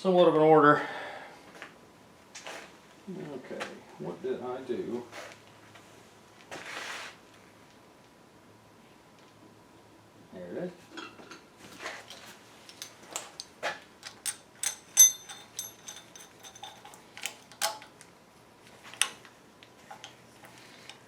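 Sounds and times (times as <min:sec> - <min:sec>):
metal tools clinking: 0:12.0 - 0:18.0
ringing metal clank: 0:14.2 - 0:17.0.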